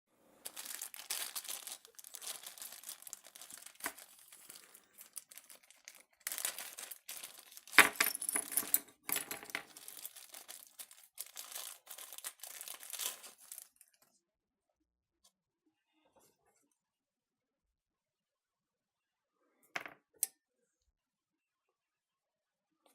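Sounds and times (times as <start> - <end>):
plastic packaging crinkling: 0.4 - 14.1.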